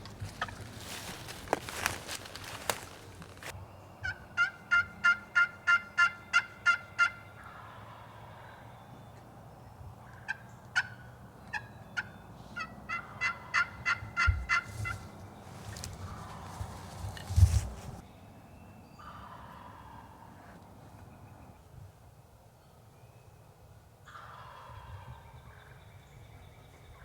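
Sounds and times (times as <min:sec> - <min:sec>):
wild turkey yelping: 0:04.0 - 0:08.6, 0:10.1 - 0:17.4, 0:19.0 - 0:20.6, 0:24.1 - 0:25.1.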